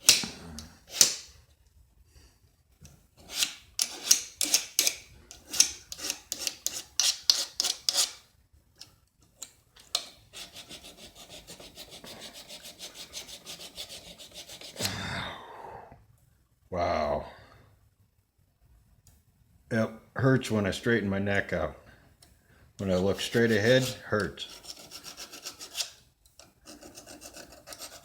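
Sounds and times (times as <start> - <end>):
blade rasping on sharpener: 3.2 - 8.2, 10.4 - 14.8, 22.8 - 26.0, 26.6 - 28.0.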